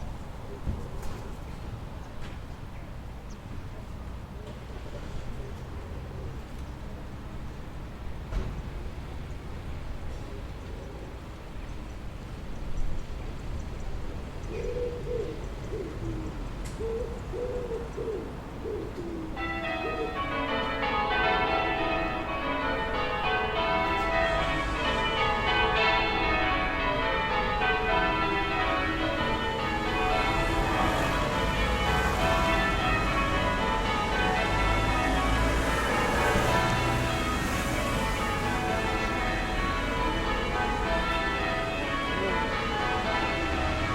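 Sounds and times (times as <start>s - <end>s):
low town rumble: 0.0s - 43.9s
distant church bells ringing: 16.8s - 43.9s.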